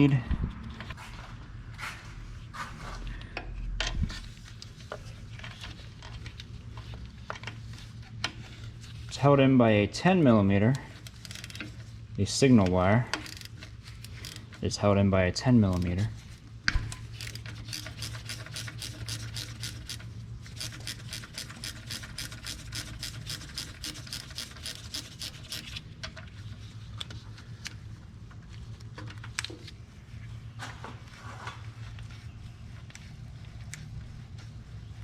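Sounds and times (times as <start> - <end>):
ratchet wrench clicking: 11.0 - 11.7, 13.2 - 14.5, 17.1 - 25.8.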